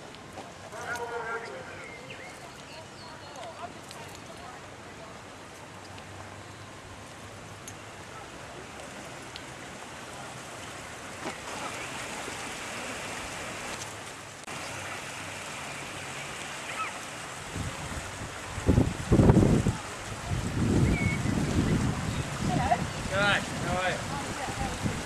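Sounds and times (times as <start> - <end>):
floodwater rushing: 0.0 - 25.0
wind buffeting microphone: 17.3 - 25.0.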